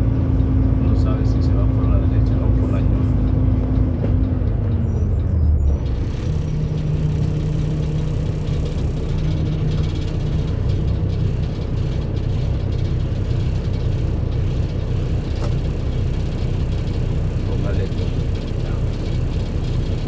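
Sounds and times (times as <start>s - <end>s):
road rumble: 0.0s - 20.0s
truck engine drone: 0.0s - 20.0s.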